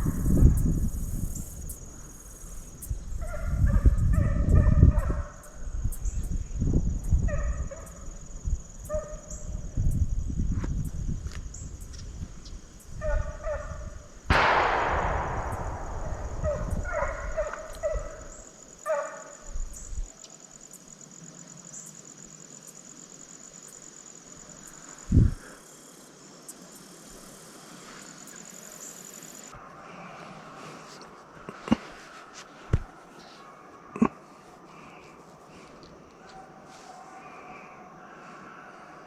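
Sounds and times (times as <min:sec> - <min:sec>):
high insect drone: 0:00.0 - 0:31.8
gunshot echoing: 0:14.3 - 0:18.0.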